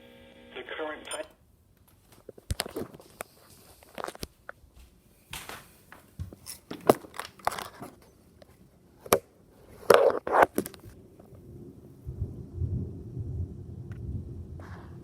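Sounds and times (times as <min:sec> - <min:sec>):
rustles crinkles and knocks: 0:01.8 - 0:11.0.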